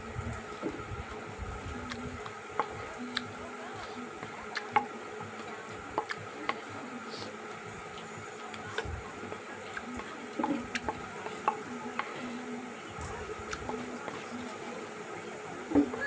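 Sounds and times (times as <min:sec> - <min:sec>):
soft chewing: 0:00.1 - 0:16.0
utensils clicking against bowl: 0:01.8 - 0:06.7, 0:09.7 - 0:14.2.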